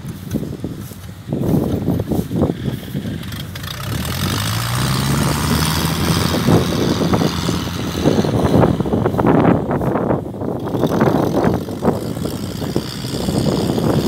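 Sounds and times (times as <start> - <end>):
diesel engine droning: 0.0 - 14.0.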